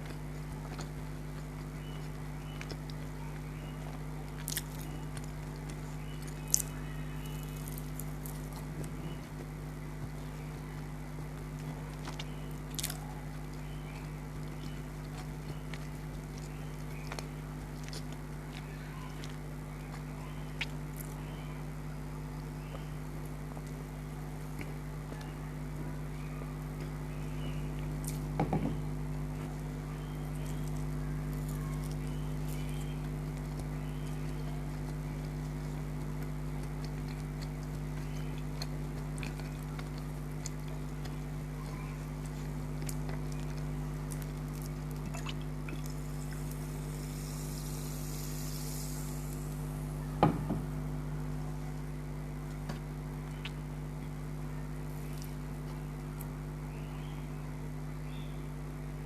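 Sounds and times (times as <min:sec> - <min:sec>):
chewing with mouth clicks: 0:00.0 - 0:21.4, 0:22.6 - 0:25.4, 0:27.7 - 0:28.4, 0:29.1 - 0:49.5, 0:52.4 - 0:54.2, 0:54.9 - 0:56.4
electrical hum: 0:00.0 - 0:59.0
hiss: 0:47.0 - 0:49.5
knock: 0:50.2 - 0:50.6.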